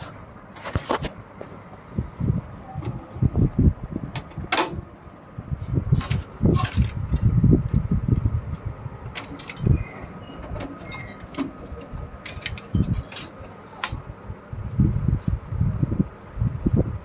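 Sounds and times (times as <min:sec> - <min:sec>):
clicks and knocks of cables: 0:09.1 - 0:09.7, 0:10.4 - 0:14.0.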